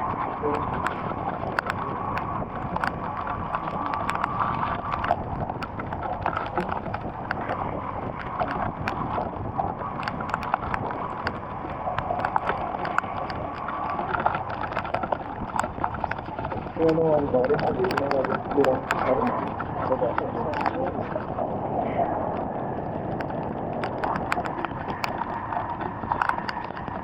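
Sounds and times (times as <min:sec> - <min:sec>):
drops tapping near microphone: 0:00.4 - 0:21.4.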